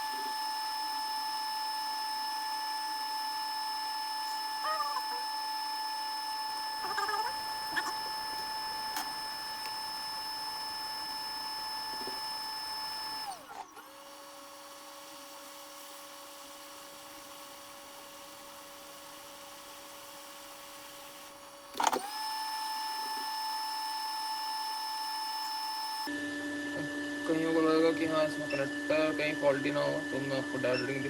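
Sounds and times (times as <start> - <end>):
hot-air blower whining: 0.0 - 31.0.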